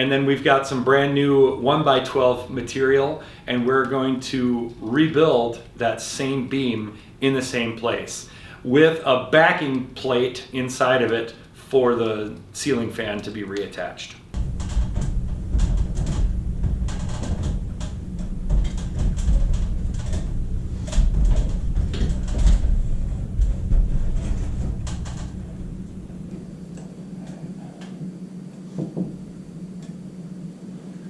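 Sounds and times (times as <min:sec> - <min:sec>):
low rumble: 0:14.3 - 0:31.0
carpentry knocks and clunks: 0:28.7 - 0:29.2.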